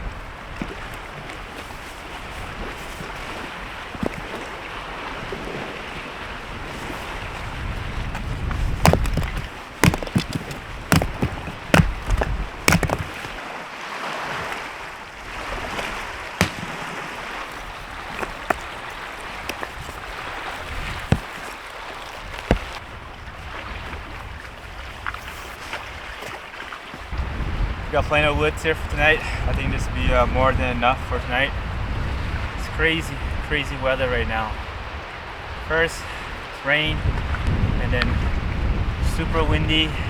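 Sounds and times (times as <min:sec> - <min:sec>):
wind and rain: 0:00.0 - 0:40.0
sharp knocks: 0:08.8 - 0:13.4, 0:16.4 - 0:16.9
wind buffeting microphone: 0:27.1 - 0:40.0.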